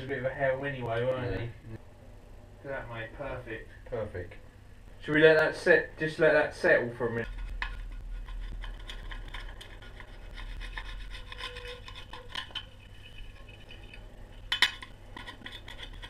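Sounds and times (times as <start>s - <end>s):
rubbing and scraping on wheel: 7.3s - 14.5s.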